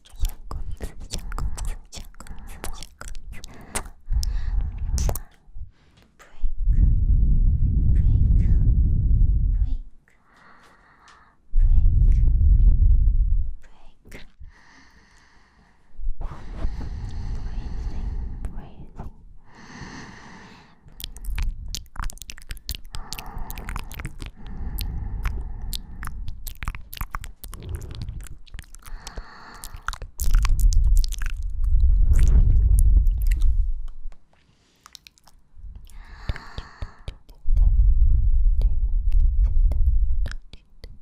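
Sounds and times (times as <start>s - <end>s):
mouth kisses and wet clicks: 0.0s - 5.4s, 20.9s - 34.2s, 34.8s - 37.7s, 38.6s - 41.0s
soft breaths: 0.0s - 12.9s, 13.5s - 30.4s, 31.4s - 40.1s
breath blowing on microphone: 3.5s - 5.8s, 6.6s - 9.6s, 11.6s - 13.6s, 16.2s - 21.9s, 22.6s - 33.9s, 35.6s - 40.3s.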